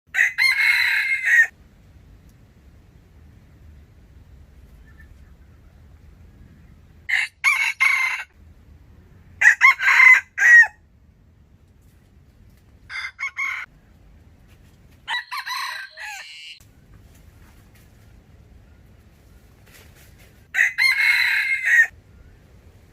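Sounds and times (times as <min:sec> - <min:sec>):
wild chicken calling: 0:00.1 - 0:01.6, 0:04.8 - 0:08.4, 0:12.9 - 0:13.9, 0:15.0 - 0:16.6, 0:20.4 - 0:22.5.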